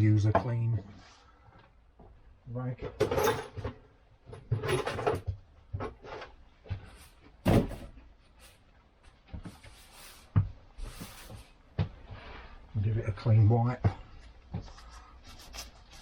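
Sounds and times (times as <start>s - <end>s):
rag and parts rustling: 2.8s - 8.6s.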